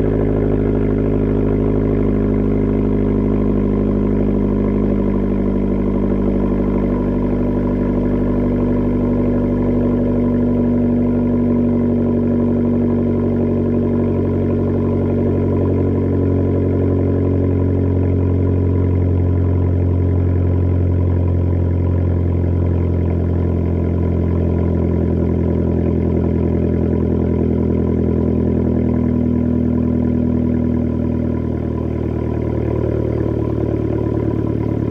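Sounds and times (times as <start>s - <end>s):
car engine drone from inside: 0.0s - 34.9s.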